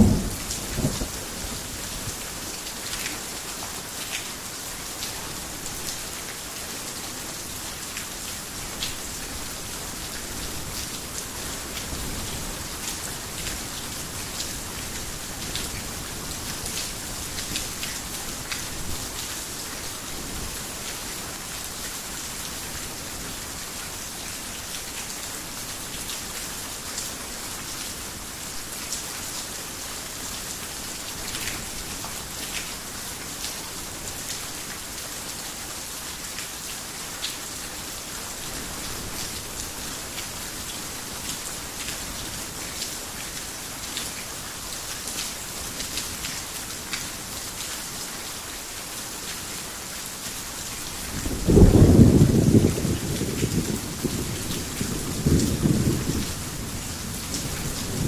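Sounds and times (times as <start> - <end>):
thunder rumble: 0.0 - 1.2, 51.3 - 56.4
heavy rain on a roof: 0.0 - 58.0.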